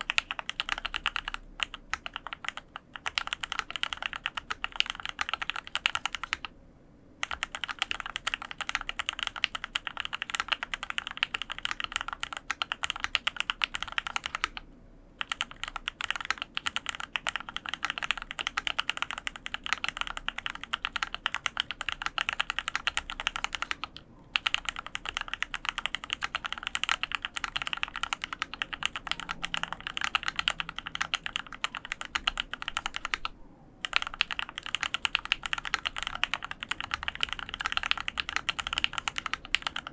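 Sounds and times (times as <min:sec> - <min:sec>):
mechanical keyboard typing: 0:00.0 - 0:06.5, 0:07.2 - 0:39.9.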